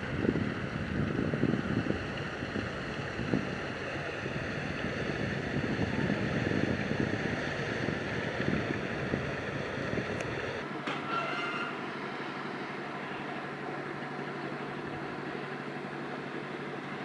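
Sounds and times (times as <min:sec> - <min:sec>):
wind buffeting microphone: 0:00.0 - 0:10.6
ship motor humming: 0:00.0 - 0:17.0.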